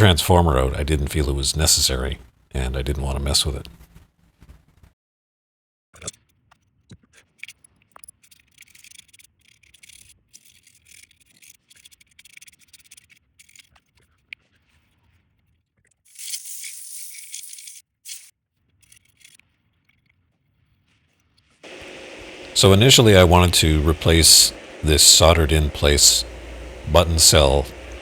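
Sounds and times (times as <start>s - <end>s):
small parts clicking and rattling: 7.1s - 14.3s, 15.8s - 20.3s.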